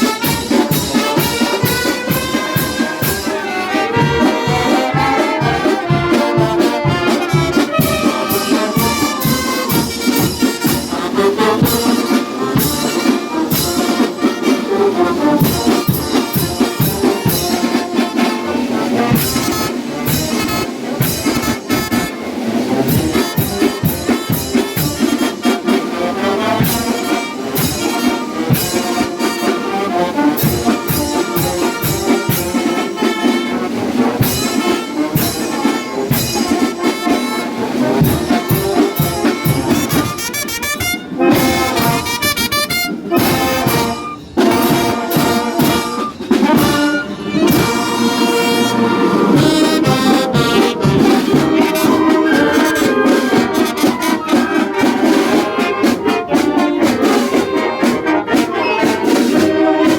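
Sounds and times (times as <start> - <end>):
drums and cymbals beat: 0.0 - 59.9
trumpets and trombones: 0.0 - 59.9.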